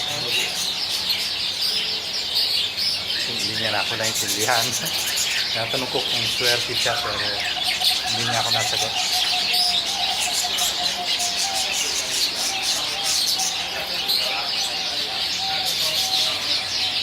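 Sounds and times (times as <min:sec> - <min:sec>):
caged birds chirping: 0:00.0 - 0:17.0.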